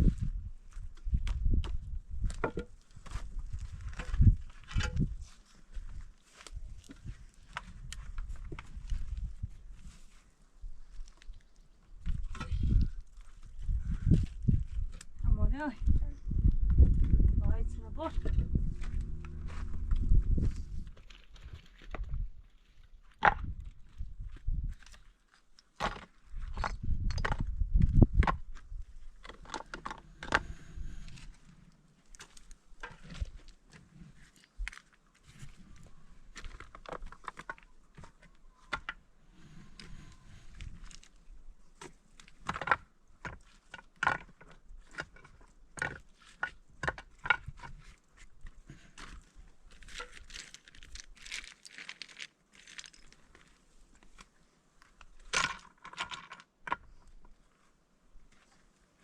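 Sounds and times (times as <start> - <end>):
rustling: 17.6 - 21.9.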